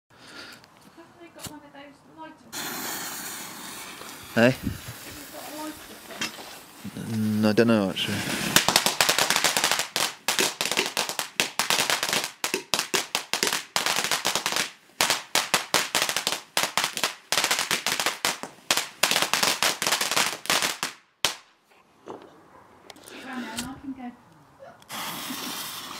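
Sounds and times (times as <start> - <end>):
firework cracks and pops: 2.5 - 21.6, 24.8 - 25.9.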